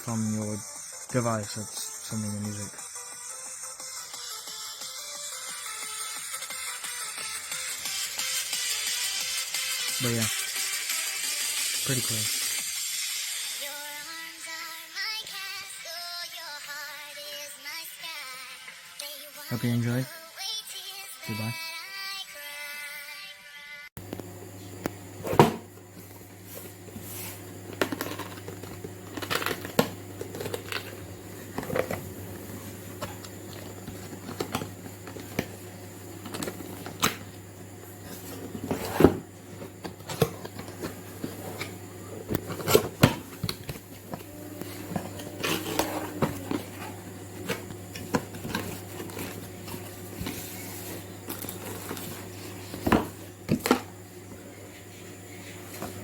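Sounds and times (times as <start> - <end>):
steady low hum: 24.0 - 56.0.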